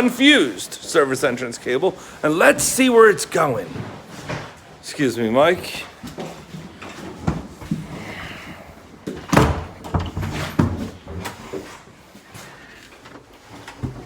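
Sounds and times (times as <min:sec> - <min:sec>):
knocks and thumps: 0:09.0 - 0:11.4.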